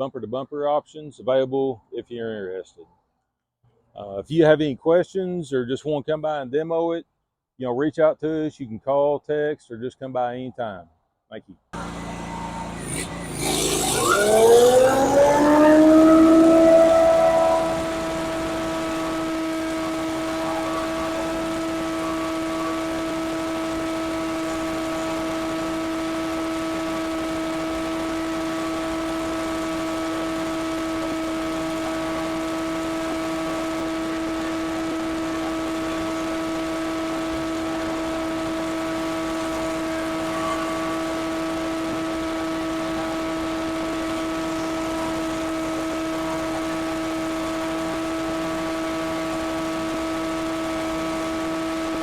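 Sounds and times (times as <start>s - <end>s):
blower whining: 11.8s - 52.0s.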